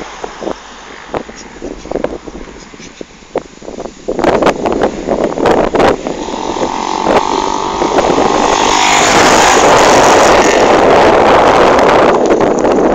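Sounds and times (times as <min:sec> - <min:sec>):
wind noise on microphone: 0:00.0 - 0:12.9
motorcycle engine running: 0:05.2 - 0:12.9.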